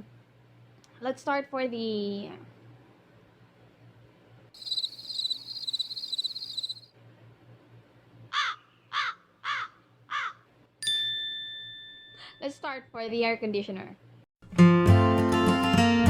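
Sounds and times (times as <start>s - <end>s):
high insect trill: 4.6s - 6.9s
crow cawing: 8.3s - 10.4s.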